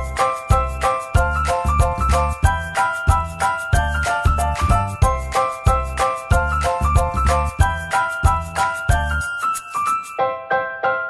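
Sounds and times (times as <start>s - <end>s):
upbeat music with chiming melody: 0.0s - 11.0s.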